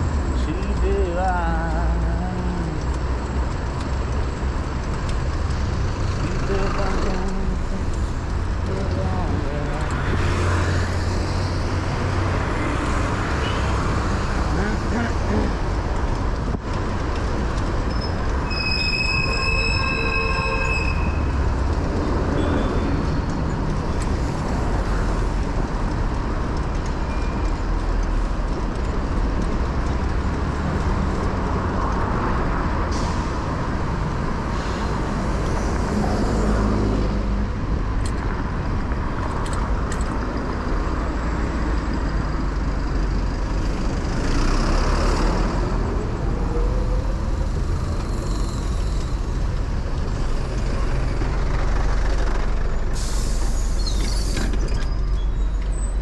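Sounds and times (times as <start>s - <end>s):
street traffic rumble: 0.0s - 56.0s
high-pitched squeal: 17.9s - 21.4s, 45.2s - 50.4s.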